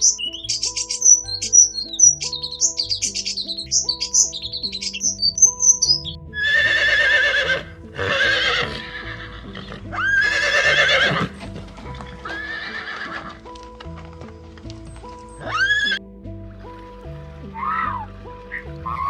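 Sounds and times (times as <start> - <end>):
background music: 0.0 - 19.0
horse whinnying: 6.4 - 13.5, 15.4 - 16.0.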